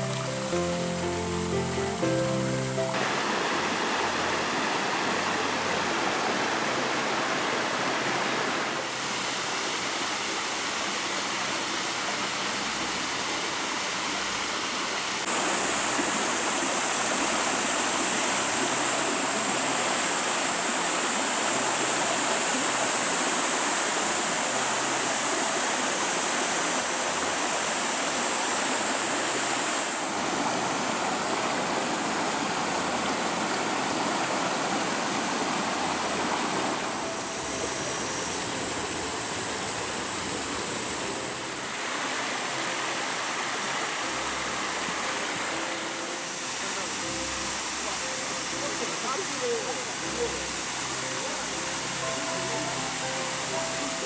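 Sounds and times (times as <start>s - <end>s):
stream water rushing: 0.0s - 54.0s
high-pitched whine: 37.0s - 41.6s.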